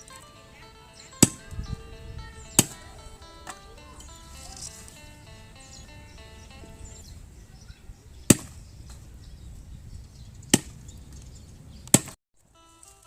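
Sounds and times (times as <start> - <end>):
faint music: 0.0 - 9.1, 12.4 - 13.0
sharp chopping blows: 1.2 - 1.6, 2.5 - 5.7, 8.3 - 9.0, 10.5 - 10.9, 11.8 - 12.2.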